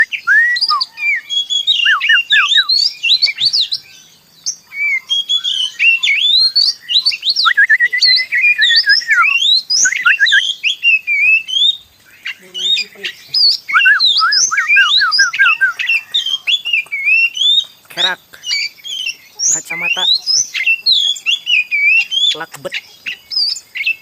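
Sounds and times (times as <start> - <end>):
songbird singing: 0.0 - 24.0.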